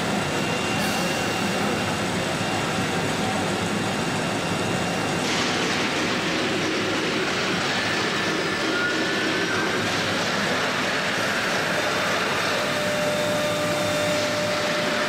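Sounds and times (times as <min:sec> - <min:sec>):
spindle whine: 0:00.0 - 0:15.0
cnc router milling wood: 0:05.8 - 0:15.0.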